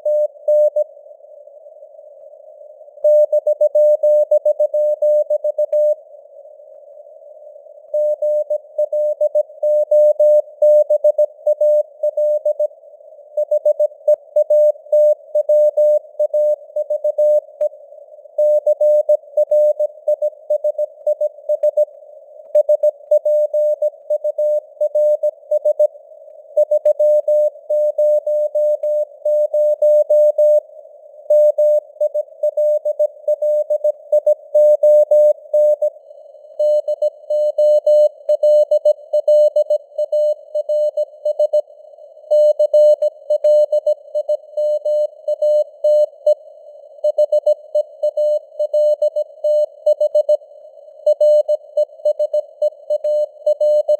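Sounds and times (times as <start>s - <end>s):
morse code tone: 52.1s - 53.9s.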